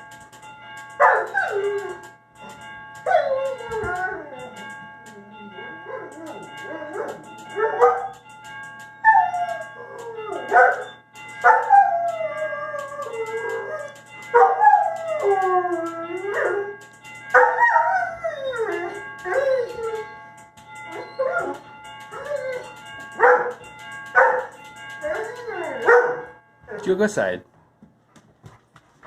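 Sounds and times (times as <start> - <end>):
faint steady tones: 0.0 - 27.5
dog howling: 1.0 - 2.1, 3.0 - 8.2, 9.0 - 20.2, 20.8 - 23.6, 24.2 - 26.8
dog yelping: 9.0 - 16.7, 24.2 - 26.8.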